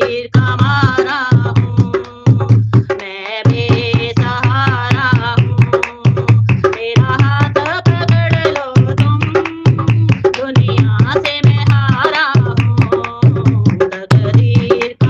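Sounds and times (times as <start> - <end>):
hand drum playing: 0.0 - 15.0
woman singing: 0.0 - 15.0.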